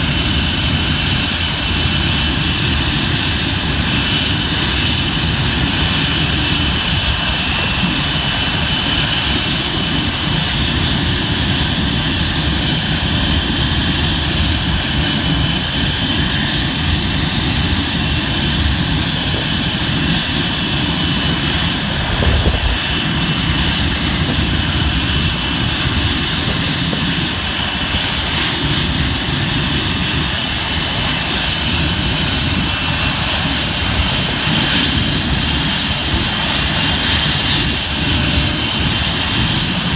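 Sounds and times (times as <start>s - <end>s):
jet engines running: 0.0s - 39.9s.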